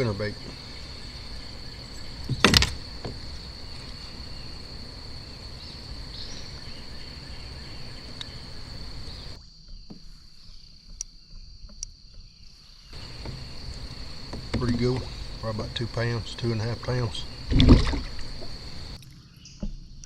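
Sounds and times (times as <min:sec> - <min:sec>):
low background rumble: 0:00.0 - 0:09.4, 0:13.0 - 0:19.0
crickets trilling: 0:00.0 - 0:20.0.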